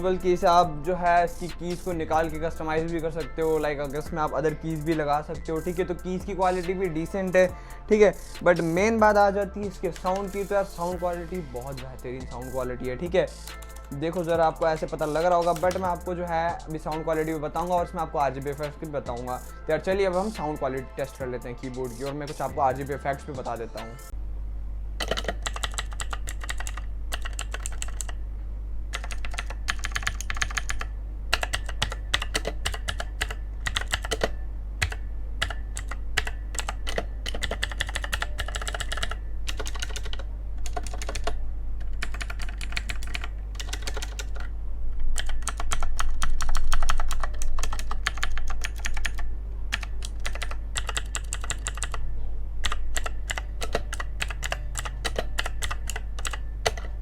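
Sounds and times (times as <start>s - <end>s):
low steady hum: 0.0s - 57.0s
clicky mechanical keyboard typing: 9.6s - 10.6s, 13.5s - 16.2s, 25.0s - 28.2s, 28.9s - 44.5s, 45.2s - 52.0s, 52.6s - 57.0s.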